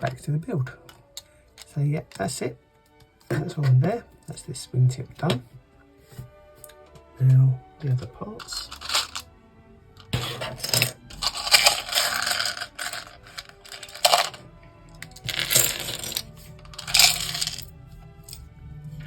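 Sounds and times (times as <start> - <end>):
faint background music: 0.0 - 19.0
plastic pieces clattering: 8.4 - 9.2, 10.0 - 14.4, 15.0 - 17.7.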